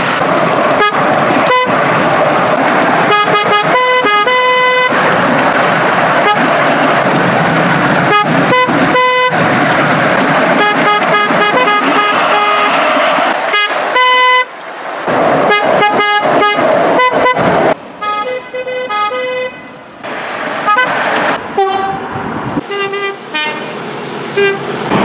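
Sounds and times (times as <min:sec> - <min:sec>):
train and truck horn blasts: 0:00.8 - 0:01.9, 0:03.0 - 0:05.0, 0:06.2 - 0:06.6, 0:08.0 - 0:09.5, 0:10.5 - 0:14.6, 0:15.5 - 0:19.8, 0:20.6 - 0:24.8.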